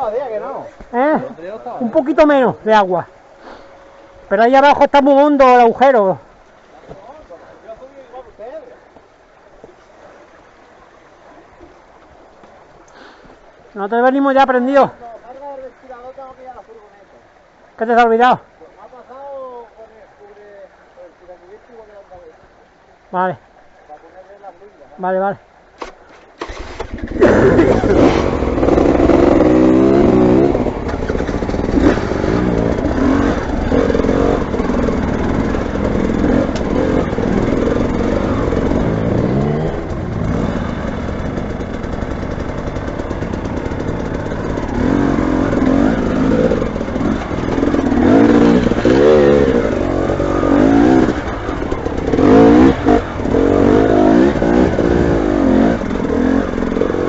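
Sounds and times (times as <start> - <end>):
motorcycle engine revving: 26.4 - 57.0.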